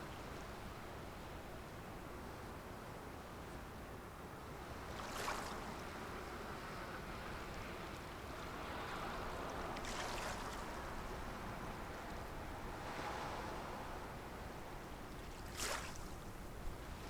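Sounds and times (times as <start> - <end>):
small waves washing in: 12.4 - 17.0.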